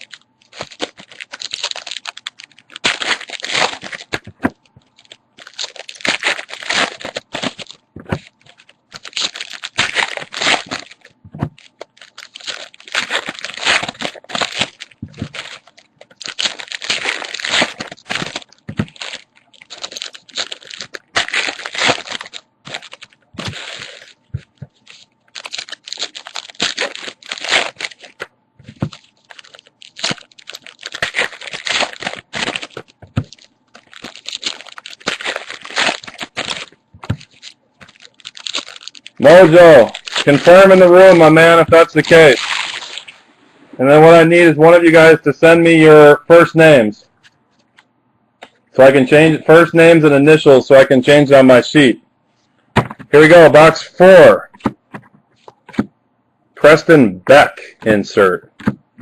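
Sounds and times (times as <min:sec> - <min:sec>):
plastic wrappers crinkling and tearing: 0:00.0 - 0:43.3.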